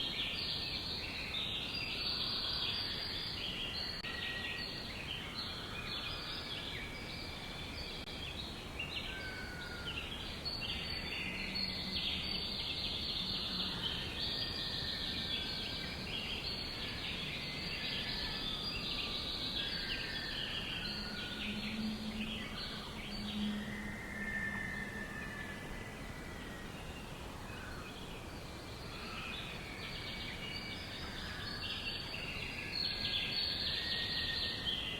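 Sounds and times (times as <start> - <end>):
small birds chirping: 0.0 - 34.9
whistled bird notes: 8.9 - 34.9.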